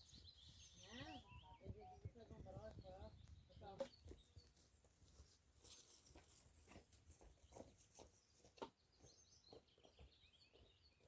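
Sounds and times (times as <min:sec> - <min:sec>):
faint bird chirps: 0:00.0 - 0:04.6.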